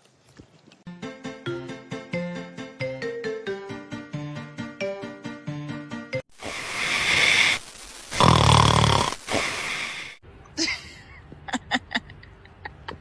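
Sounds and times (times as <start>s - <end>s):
music: 0.9s - 6.3s
loud snoring breaths: 8.2s - 10.2s.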